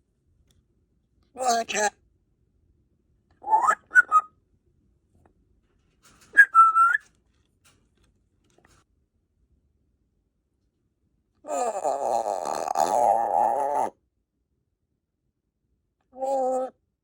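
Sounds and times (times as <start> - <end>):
parrot whistling: 3.4 - 4.3, 6.4 - 7.0.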